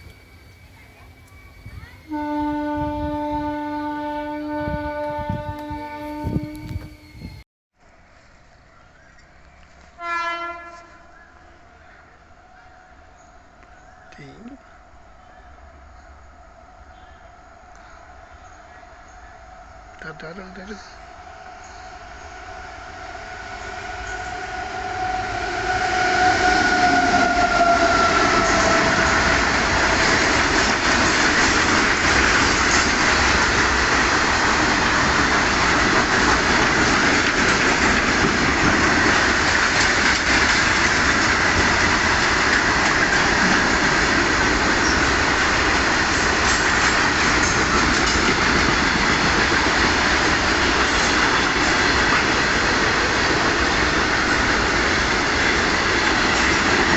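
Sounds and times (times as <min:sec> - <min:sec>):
train horn: 0:02.0 - 0:07.2, 0:09.9 - 0:11.2, 0:21.6 - 0:30.6
train carriages rumbling and clacking: 0:23.2 - 0:56.9.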